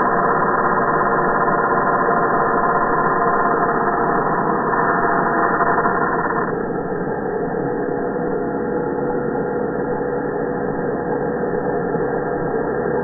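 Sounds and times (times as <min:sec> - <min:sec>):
electric angle grinder running: 0:00.0 - 0:06.5.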